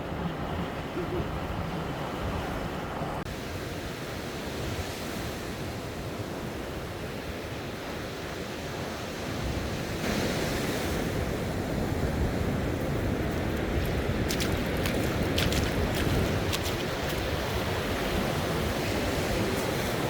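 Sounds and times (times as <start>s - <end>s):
sea waves washing: 8.7s - 20.0s
wind buffeting microphone: 8.7s - 20.0s.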